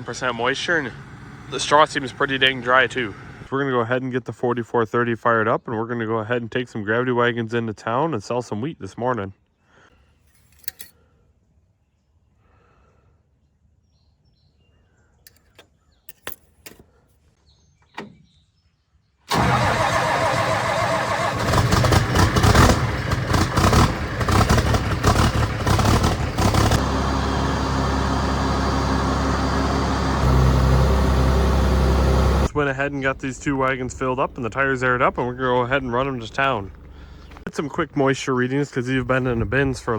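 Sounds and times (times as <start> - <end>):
tractor diesel engine starting: 0.0 - 3.5, 19.3 - 37.5.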